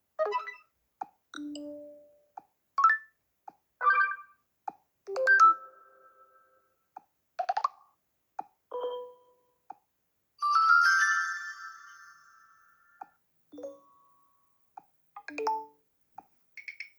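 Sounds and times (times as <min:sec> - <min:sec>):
tablet notification chimes: 0:00.2 - 0:00.6, 0:03.8 - 0:04.3, 0:08.7 - 0:09.2, 0:15.2 - 0:15.7.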